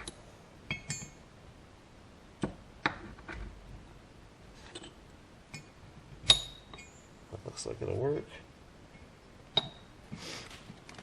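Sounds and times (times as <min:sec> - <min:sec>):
metal tools clicking and knocking: 0:00.0 - 0:01.2.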